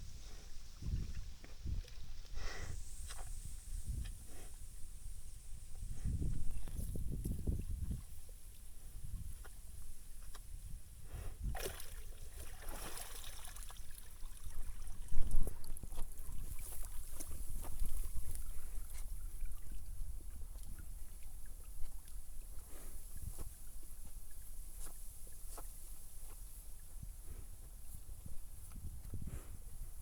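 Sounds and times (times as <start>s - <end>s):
water sloshing and splashing: 11.6s - 22.6s.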